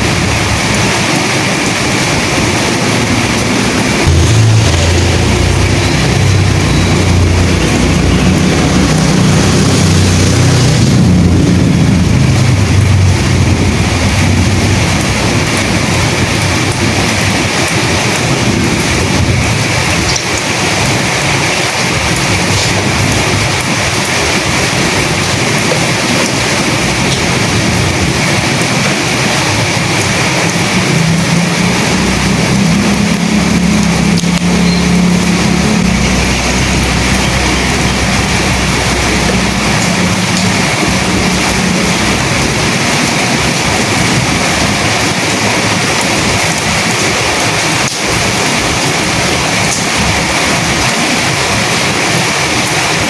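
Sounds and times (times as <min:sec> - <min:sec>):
loud rain hiss: 0:00.0 - 0:53.0
wind: 0:00.0 - 0:53.0
deep low rumble: 0:02.9 - 0:17.0.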